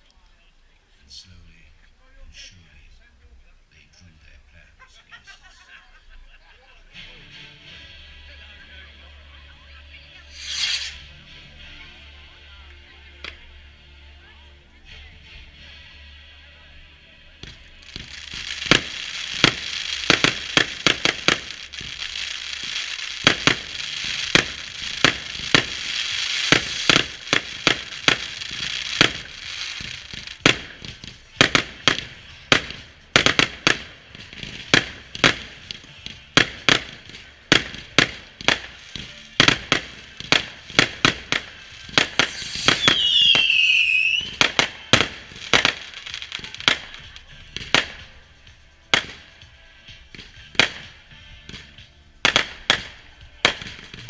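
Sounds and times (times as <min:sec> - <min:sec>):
fireworks hiss: 0:10.2 - 0:12.6, 0:17.4 - 0:54.0
fireworks banging: 0:10.2 - 0:13.6, 0:17.3 - 0:54.0
whistling firework shrieking: 0:10.3 - 0:11.1, 0:41.8 - 0:46.8.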